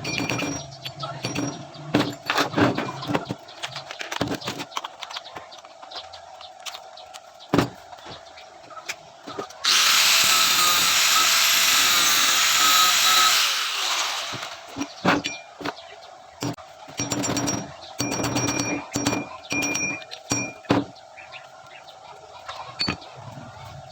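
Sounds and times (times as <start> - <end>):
power tool running: 9.6 - 15.0.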